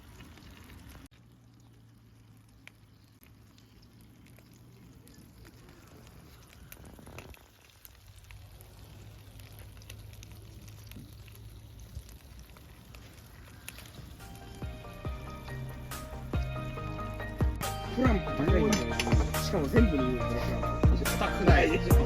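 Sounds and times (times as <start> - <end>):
food sizzling and crackling: 0.0 - 22.0.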